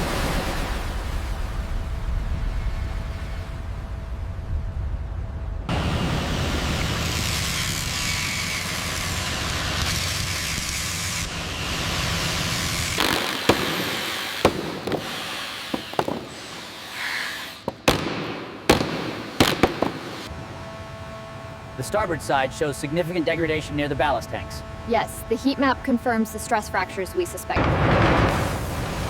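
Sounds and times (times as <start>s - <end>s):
rushing noise with low rumble: 0.0s - 8.2s
sharp knocks and bangs: 12.9s - 16.9s, 17.6s - 20.3s.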